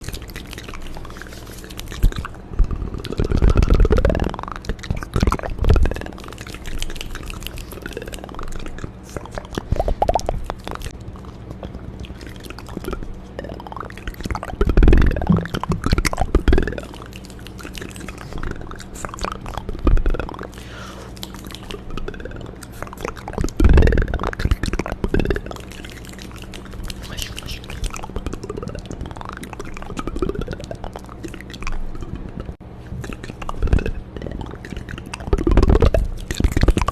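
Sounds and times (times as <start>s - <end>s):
wet mouth clicks and smacks: 0.0s - 36.9s.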